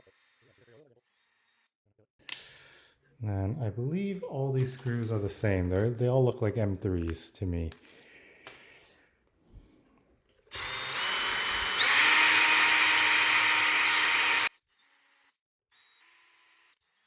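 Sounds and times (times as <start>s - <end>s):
small electric drill motor: 0.0s - 1.8s, 10.5s - 17.0s.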